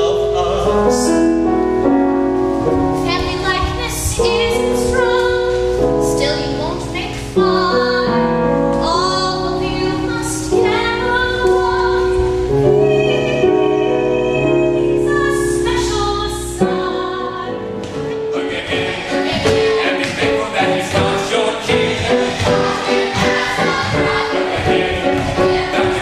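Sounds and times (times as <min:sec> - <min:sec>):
musical accompaniment with bass: 0:00.0 - 0:26.0
people singing long notes: 0:17.0 - 0:26.0.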